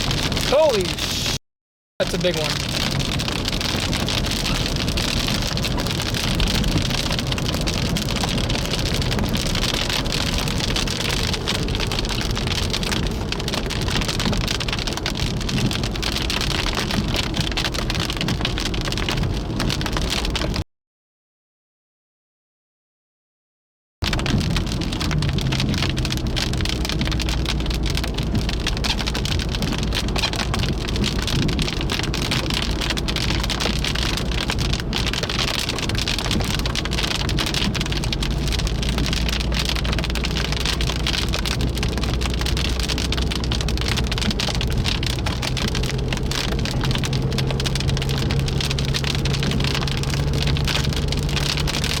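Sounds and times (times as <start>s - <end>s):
heavy rain falling: 0.0s - 1.4s, 2.0s - 20.6s, 24.0s - 52.0s
low engine hum: 24.1s - 52.0s.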